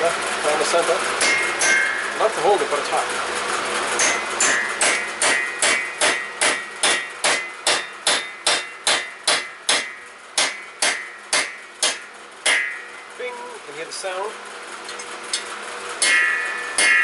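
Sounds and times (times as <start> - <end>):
hammer tapping metal tool: 1.2 - 2.1, 4.0 - 12.8.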